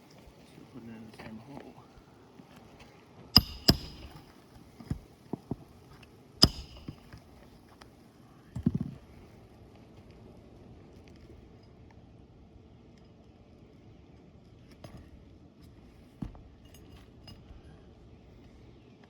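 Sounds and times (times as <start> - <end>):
hammer striking nail: 3.4 - 5.0, 6.4 - 7.2
light hammer taps: 3.4 - 5.0, 6.4 - 7.2.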